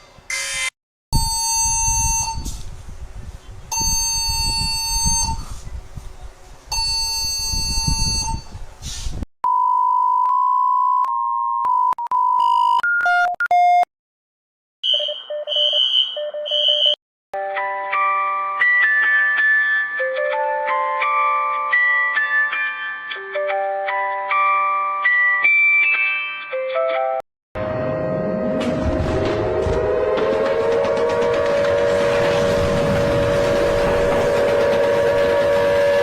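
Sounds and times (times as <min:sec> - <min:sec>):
emergency alert beeping tones: 0:01.2 - 0:02.5, 0:03.7 - 0:05.4, 0:14.8 - 0:17.0.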